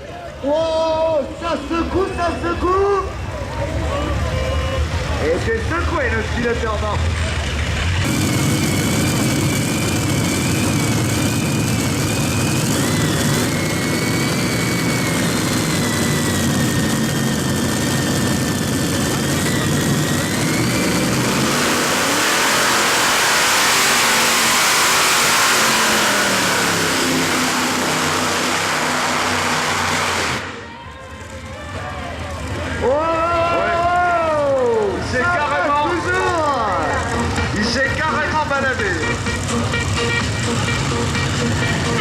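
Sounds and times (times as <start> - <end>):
tractor engines running hard: 0.0 - 42.0.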